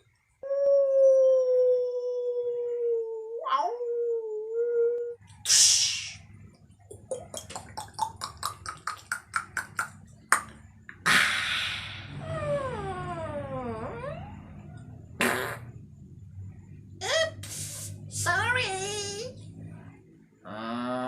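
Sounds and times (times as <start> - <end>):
breathy hiss: 5.4 - 6.3, 11.0 - 12.2, 17.4 - 18.1
mouth clicks: 6.9 - 12.0.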